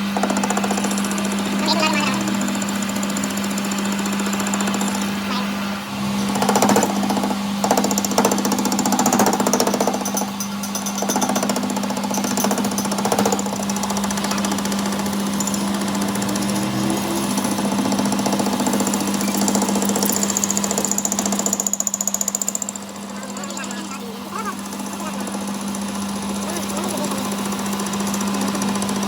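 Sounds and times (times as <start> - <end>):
workshop machine rattling buzz: 0.0 - 29.0.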